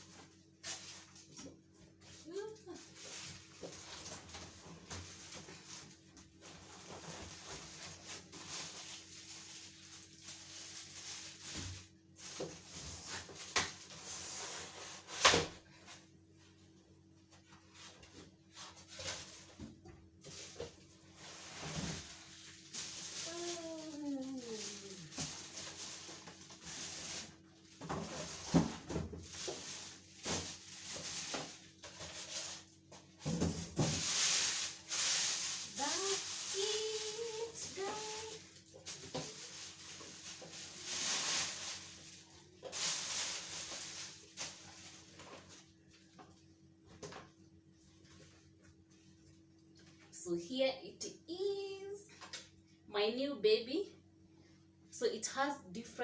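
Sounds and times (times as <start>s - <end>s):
packaging rustling: 21.3s - 32.8s, 34.0s - 45.6s.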